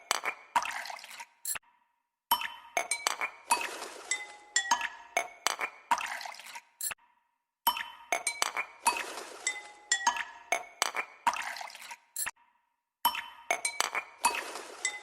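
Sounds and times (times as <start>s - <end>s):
glassy chime-like background music: 2.3s - 5.4s, 7.7s - 10.8s, 13.1s - 15.0s.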